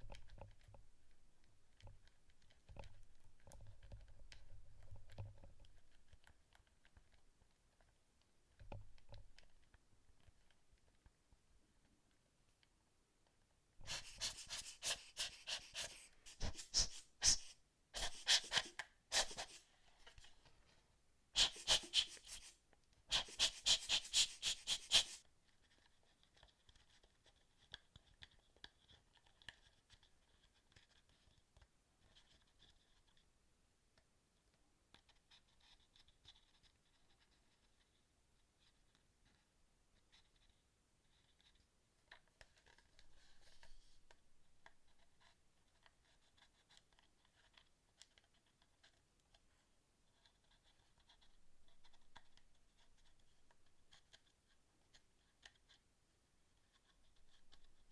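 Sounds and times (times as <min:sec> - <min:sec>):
hands scratching plastic controller: 0:13.8 - 0:20.4, 0:21.4 - 0:33.3.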